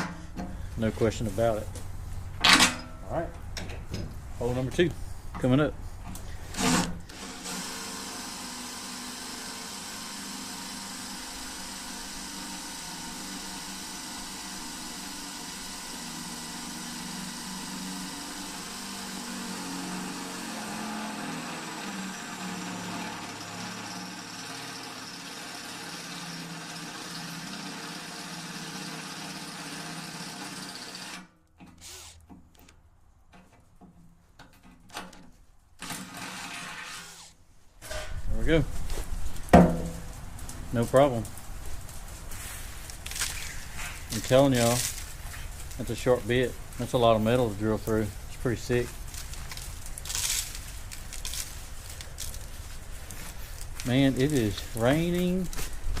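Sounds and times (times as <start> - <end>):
power drill boring through steel: 6.5 - 32.2.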